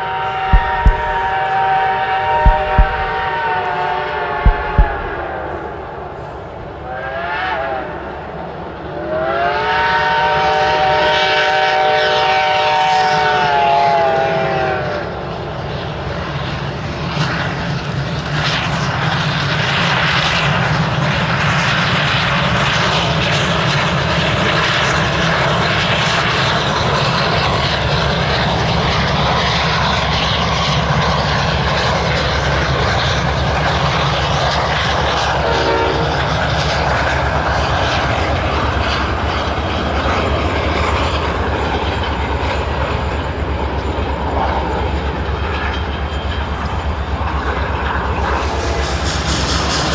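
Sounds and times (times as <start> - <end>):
steam locomotive rumble: 0.0 - 49.9
steam whistle blast: 6.8 - 8.1, 8.9 - 15.2, 35.3 - 36.3.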